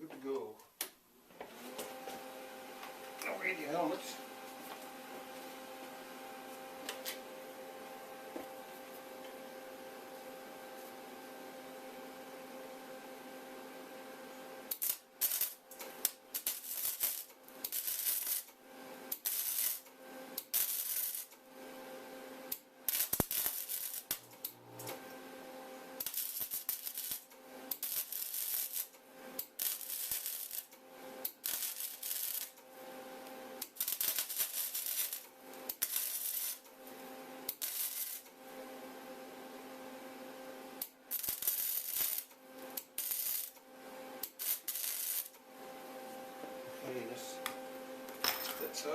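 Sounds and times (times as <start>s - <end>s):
welding arc crackling: 14.7s - 21.4s, 22.5s - 25.0s, 26.0s - 32.6s, 33.6s - 36.7s, 37.5s - 38.3s, 40.8s - 43.6s, 44.2s - 45.4s.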